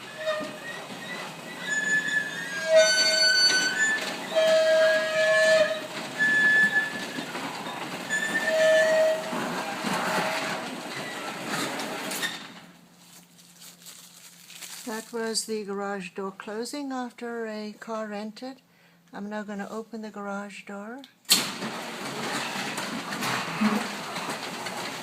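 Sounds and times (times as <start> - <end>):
garage door squealing: 0.0 - 12.6, 21.4 - 25.0
garage door rattling: 0.0 - 12.7, 21.3 - 25.0.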